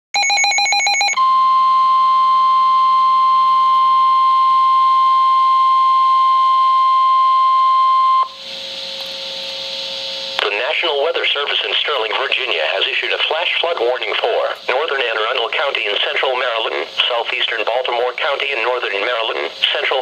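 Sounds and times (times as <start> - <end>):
radio hiss: 8.4 - 20.0.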